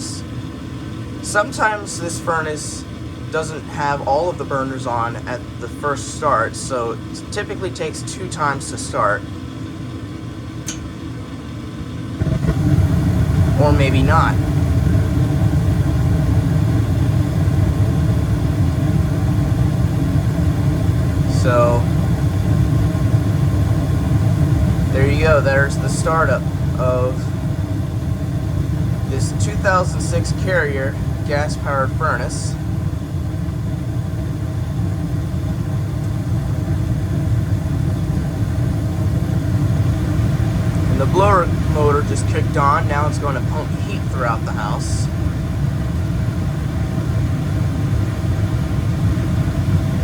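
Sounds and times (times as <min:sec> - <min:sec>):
gas furnace rumbling: 0:00.0 - 0:50.0.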